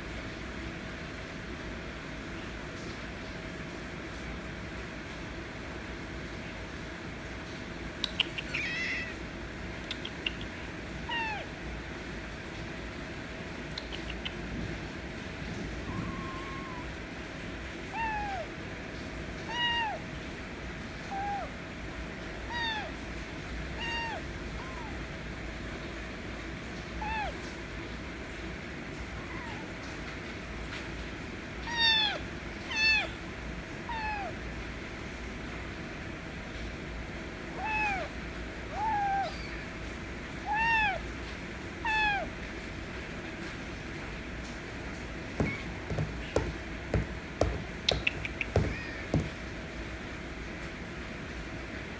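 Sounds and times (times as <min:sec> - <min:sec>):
kitten meowing: 0:08.1 - 0:09.2, 0:09.9 - 0:11.6, 0:15.8 - 0:17.0, 0:17.8 - 0:18.6, 0:19.4 - 0:20.1, 0:21.0 - 0:21.6, 0:22.4 - 0:23.0, 0:23.7 - 0:25.1, 0:27.0 - 0:27.5, 0:29.2 - 0:29.8, 0:31.6 - 0:33.2, 0:33.9 - 0:34.4, 0:37.5 - 0:39.8, 0:40.4 - 0:41.1, 0:41.8 - 0:42.4, 0:45.4 - 0:49.5.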